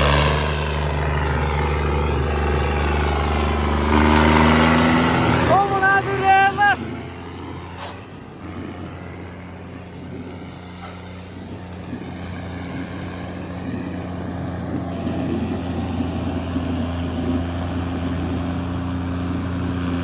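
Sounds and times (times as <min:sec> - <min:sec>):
tractor diesel engine running: 0:00.0 - 0:20.0.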